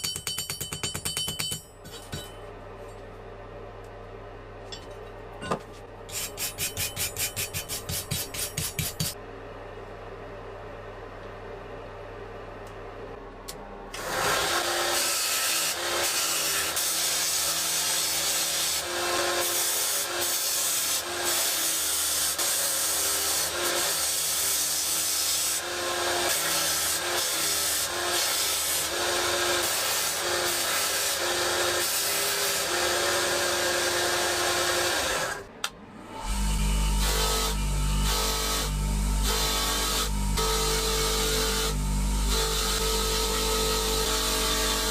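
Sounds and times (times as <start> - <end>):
rasping scrape on knife blade: 6.1 - 9.2.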